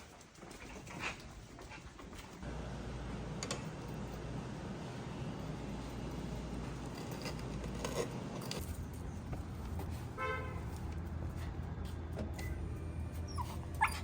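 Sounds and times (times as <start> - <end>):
low traffic rumble: 2.4 - 14.0
car horn toot: 10.2 - 10.7.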